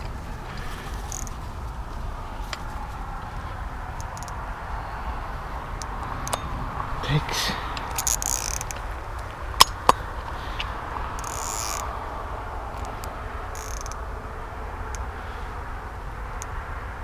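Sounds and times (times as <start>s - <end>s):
hissy rustles: 0.0s - 4.1s
steady low rumble: 0.0s - 17.0s.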